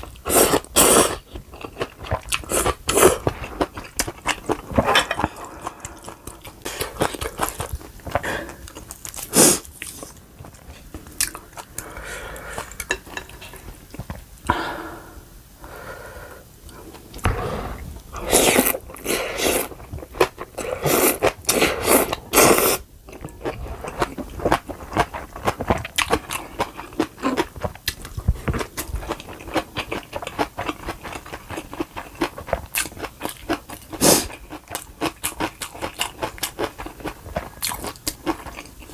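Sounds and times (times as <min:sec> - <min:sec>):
chewing and biting food: 0:23.1 - 0:38.9.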